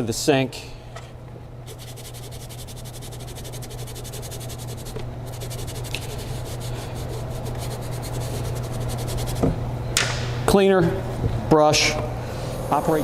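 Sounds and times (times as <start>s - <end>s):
steady low hum: 0.0s - 13.0s
stiff brush scrubbing foam pad: 1.7s - 9.5s.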